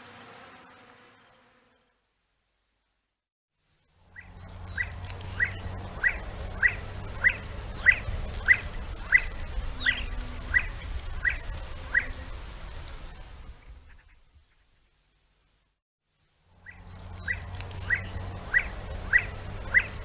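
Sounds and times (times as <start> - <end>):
partridge calling: 4.2 - 12.1.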